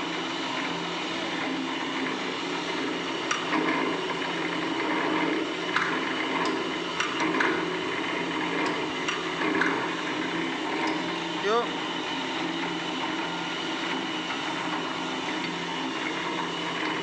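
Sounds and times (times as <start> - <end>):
cutting machine humming: 7.6 - 17.0.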